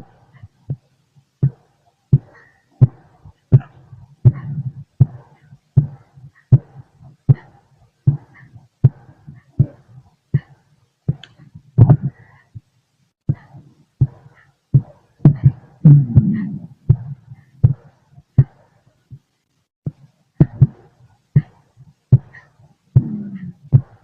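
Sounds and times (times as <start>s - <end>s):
heartbeat thuds through stethoscope: 0.0s - 24.0s
low rumble with falling pitch: 15.8s - 16.9s.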